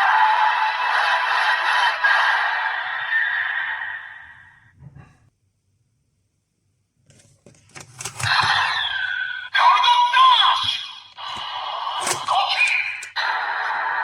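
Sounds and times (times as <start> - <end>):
plastic toy clicks: 7.8 - 8.6, 11.1 - 13.2
toy electronic sound effects: 8.2 - 13.4.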